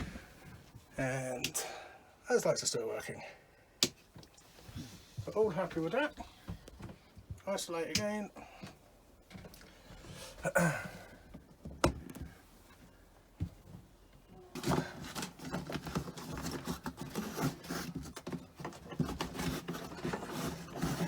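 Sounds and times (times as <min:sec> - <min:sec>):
objects rattling and clattering: 0:14.4 - 0:21.0.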